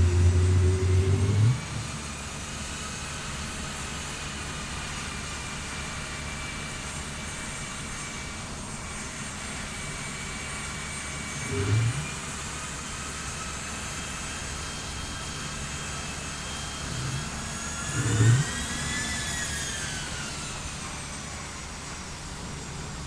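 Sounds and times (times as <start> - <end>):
low thumps: 0.0 - 2.0
jet engine roaring and whining: 0.0 - 2.2, 15.8 - 23.0.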